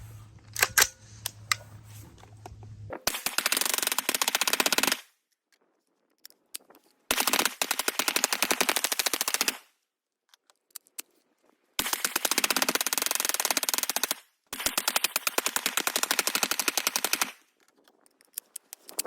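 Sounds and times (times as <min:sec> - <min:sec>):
automatic rifle bursts: 0:00.5 - 0:01.6.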